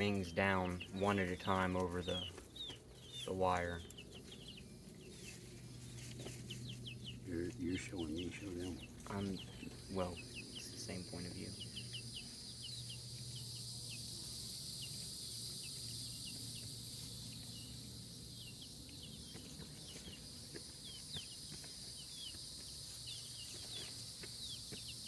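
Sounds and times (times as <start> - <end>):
insect chorus drone: 6.2 - 25.0.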